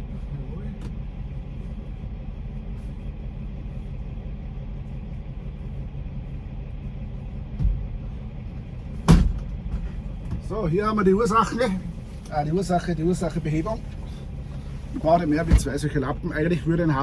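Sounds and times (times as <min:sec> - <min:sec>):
truck engine idling: 0:00.0 - 0:17.0
thump: 0:07.6 - 0:07.8, 0:09.0 - 0:10.4.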